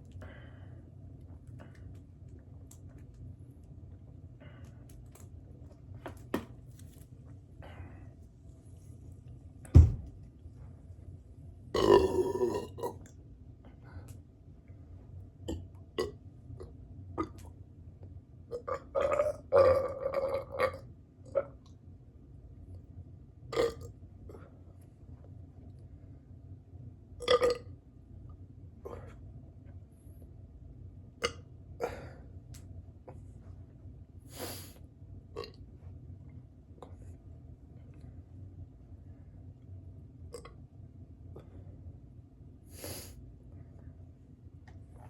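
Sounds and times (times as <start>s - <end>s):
person belching: 11.8s - 13.0s, 18.5s - 20.8s
person burping: 11.8s - 13.1s, 18.5s - 20.8s, 27.2s - 27.6s.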